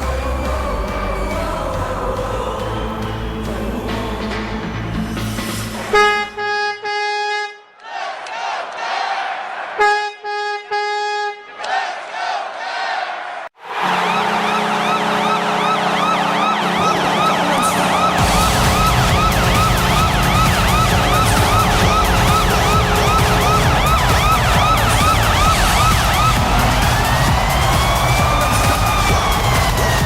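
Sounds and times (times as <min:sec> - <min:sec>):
loud music with heavy beat: 0:00.0 - 0:06.4, 0:13.8 - 0:30.0
goal horn low tone: 0:05.9 - 0:07.7, 0:09.8 - 0:11.6, 0:13.7 - 0:30.0
siren yelping: 0:13.7 - 0:30.0.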